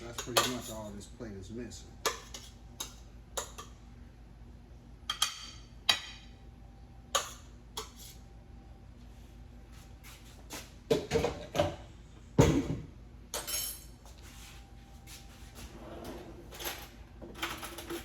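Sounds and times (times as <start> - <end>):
utensils and cookware clattering: 0.0 - 1.0, 2.0 - 3.8, 13.4 - 14.0, 16.0 - 18.0.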